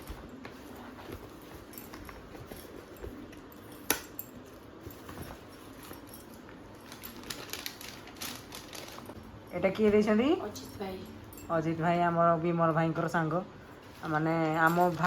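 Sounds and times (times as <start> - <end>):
gift wrap rustling: 4.6 - 9.2.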